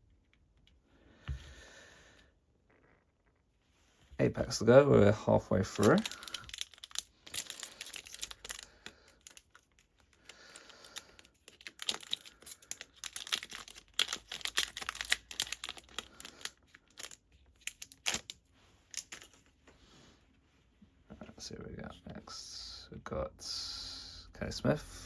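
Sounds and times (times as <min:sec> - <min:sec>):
wrapper tearing and crinkling: 0:05.6 - 0:19.4.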